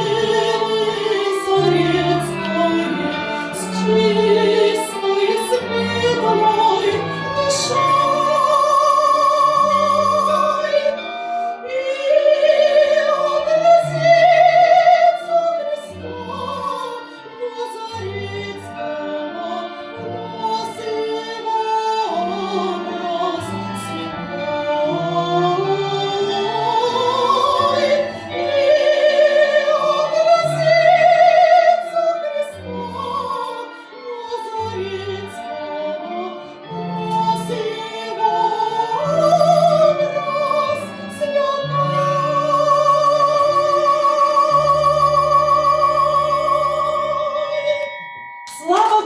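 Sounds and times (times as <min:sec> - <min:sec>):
woman singing operatically: 0:00.0 - 0:36.4, 0:37.0 - 0:47.9, 0:48.5 - 0:49.0
ringing bells: 0:47.6 - 0:49.0.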